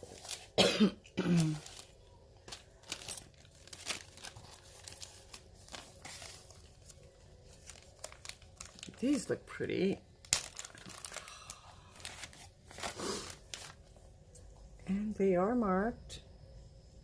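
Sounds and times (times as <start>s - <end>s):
packaging rustling and crinkling: 0.0s - 0.6s, 1.3s - 14.0s.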